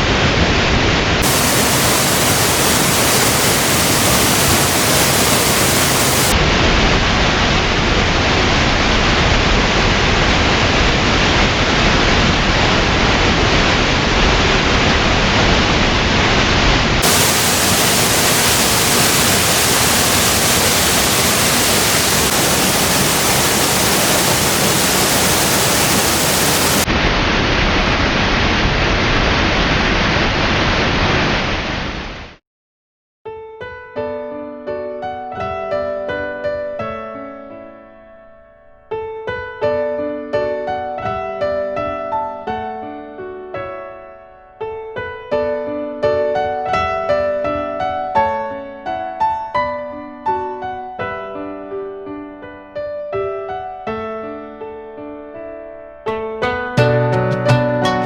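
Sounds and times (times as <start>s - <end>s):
waterfall rushing: 1.2s - 6.7s, 17.0s - 27.0s.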